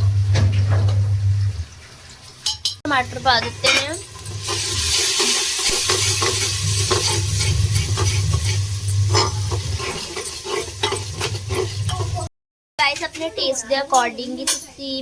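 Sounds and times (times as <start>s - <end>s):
vegetables sizzling in oil: 2.9s - 12.3s
spatula scraping a pan: 3.6s - 12.3s.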